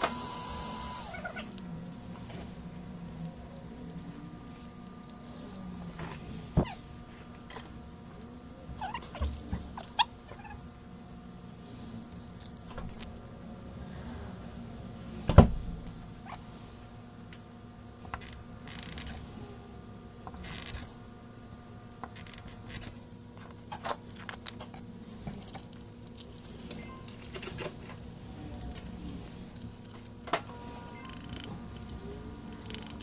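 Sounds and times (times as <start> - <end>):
small tools clicking and scraping: 18.0 - 19.2, 30.9 - 33.0.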